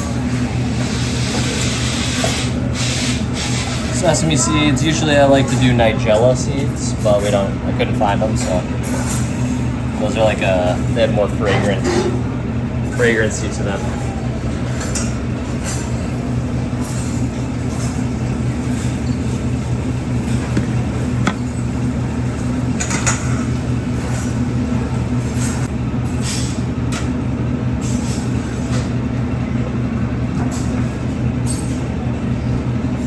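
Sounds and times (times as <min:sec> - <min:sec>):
kitchen ventilation drone: 0:00.0 - 0:33.0
utensils and dishes clinking: 0:20.0 - 0:21.8.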